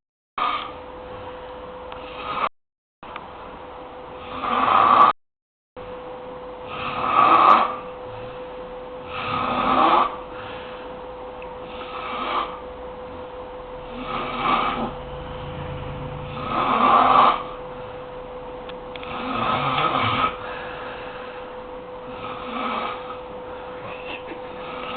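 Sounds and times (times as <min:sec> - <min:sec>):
faint steady hum: 0:00.4 - 0:02.5, 0:05.8 - 0:24.9
person snoring heavily: 0:02.0 - 0:02.5, 0:04.2 - 0:05.2, 0:06.6 - 0:08.3, 0:09.0 - 0:10.6, 0:11.6 - 0:12.6, 0:13.8 - 0:18.2, 0:19.0 - 0:21.4, 0:22.0 - 0:24.9.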